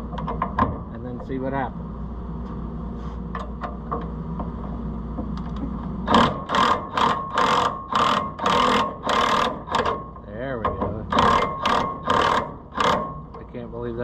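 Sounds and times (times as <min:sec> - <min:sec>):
low steady hum: 0:00.0 - 0:14.0
ratchet wrench cranking: 0:06.1 - 0:10.0, 0:11.1 - 0:13.3.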